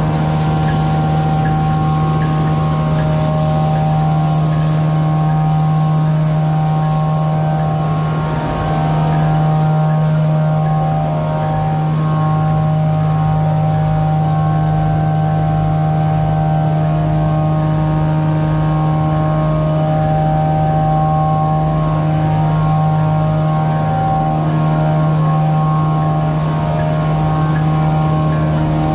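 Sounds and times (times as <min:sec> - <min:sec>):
paper towel machine humming: 0:00.0 - 0:11.5.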